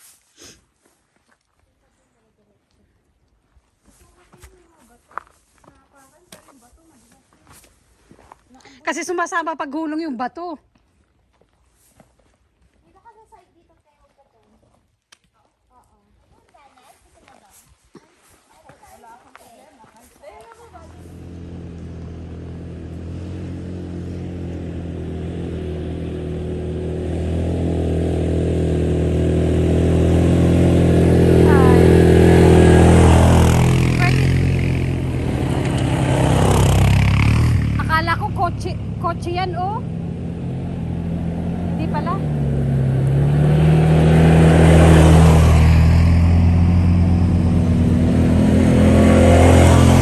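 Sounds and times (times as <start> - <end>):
vehicle engine running: 18.9 - 50.0.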